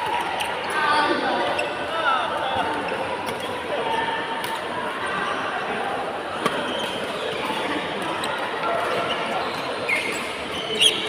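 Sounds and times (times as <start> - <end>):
murmur of voices: 0.0 - 11.0
shoe squeak: 9.0 - 11.0.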